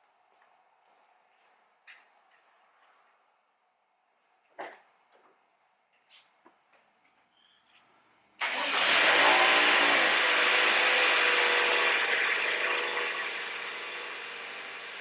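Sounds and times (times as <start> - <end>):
car engine starting and idling: 8.4 - 15.0.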